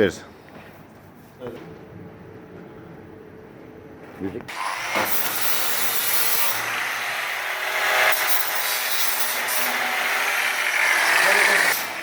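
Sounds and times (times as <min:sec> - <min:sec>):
power tool hissing and grinding: 0:04.5 - 0:12.0.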